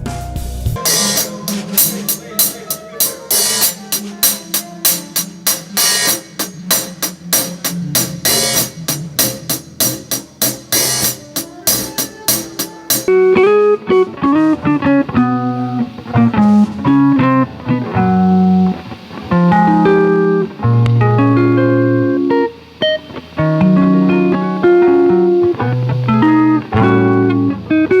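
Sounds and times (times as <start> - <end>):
drum kit beat: 0.0 - 13.6
guitar playing single notes: 0.8 - 28.0.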